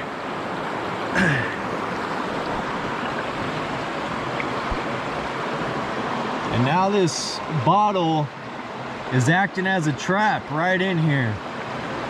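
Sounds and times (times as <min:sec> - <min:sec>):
grunt-like voice: 0:01.2 - 0:01.6.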